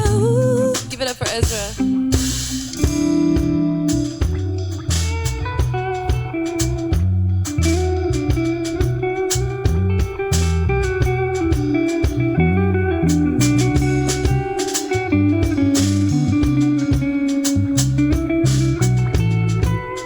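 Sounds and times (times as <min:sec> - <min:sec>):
drum kit: 0:00.0 - 0:20.0
electric bass: 0:00.0 - 0:20.0
electric guitar lead: 0:00.0 - 0:20.0.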